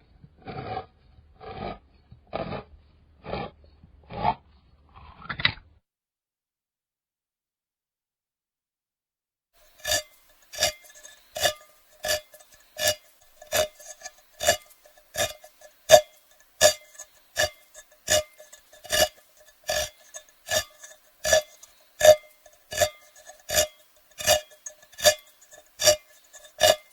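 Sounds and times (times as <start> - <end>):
can opener scraping ticks: 9.6 - 26.9.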